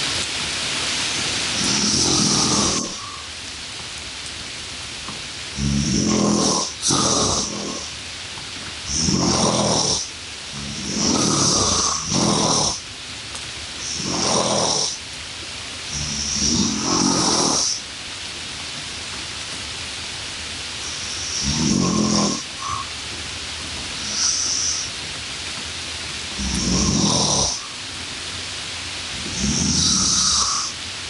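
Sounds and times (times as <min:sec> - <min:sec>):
steady hiss: 0:00.0 - 0:31.0
snoring-like rasping breaths: 0:01.6 - 0:03.2, 0:05.6 - 0:07.9, 0:08.9 - 0:12.8, 0:13.8 - 0:15.0, 0:15.9 - 0:17.8, 0:20.9 - 0:22.9, 0:24.0 - 0:24.9, 0:26.4 - 0:27.8, 0:29.2 - 0:30.8.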